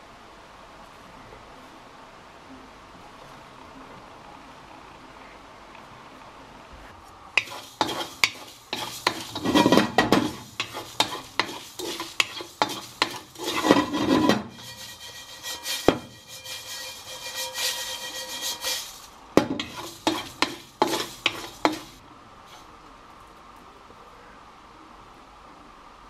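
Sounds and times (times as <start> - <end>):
food sizzling: 7.4 - 22.6
utensil scraping a pan: 7.4 - 22.7.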